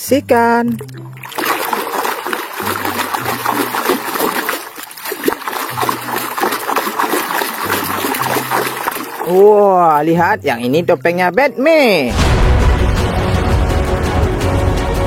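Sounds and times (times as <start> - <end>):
water splashing and spraying: 0.6 - 12.6.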